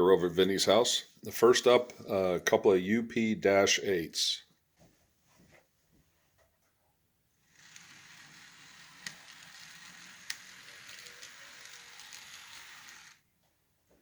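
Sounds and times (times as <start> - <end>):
model train motor whirring: 7.4 - 13.2.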